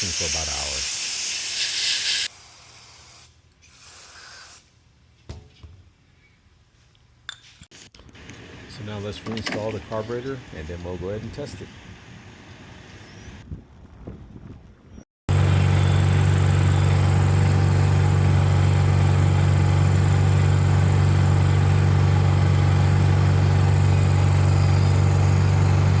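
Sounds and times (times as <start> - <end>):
generator engine humming: 8.0 - 13.4, 15.3 - 26.0.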